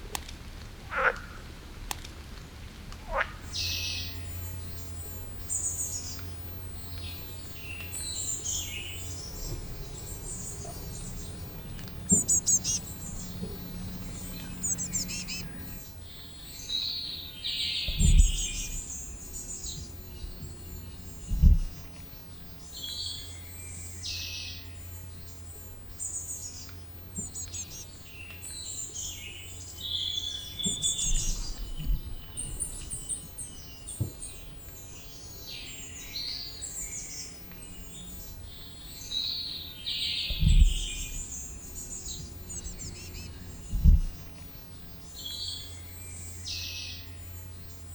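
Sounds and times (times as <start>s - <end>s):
steady low rumble: 0.0s - 35.1s, 36.0s - 47.9s
birds chirping: 0.0s - 47.9s
short low thuds: 17.9s - 21.8s, 40.3s - 44.4s.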